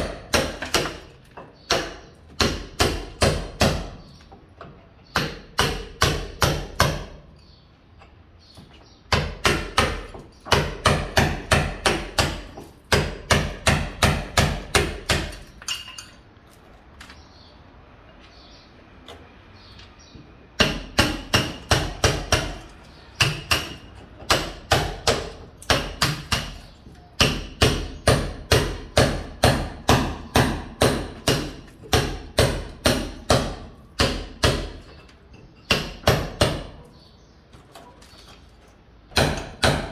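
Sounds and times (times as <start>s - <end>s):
hammer striking: 0.0s - 4.0s, 5.1s - 7.2s, 9.1s - 15.9s, 20.6s - 35.0s, 35.6s - 36.8s, 39.1s - 39.9s.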